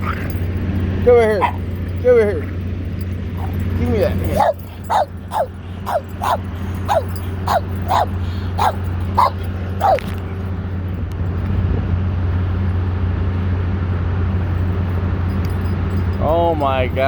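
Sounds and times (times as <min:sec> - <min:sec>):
dog yipping: 0:00.0 - 0:00.5, 0:01.2 - 0:02.0, 0:03.4 - 0:10.2
steady low hum: 0:00.0 - 0:17.0.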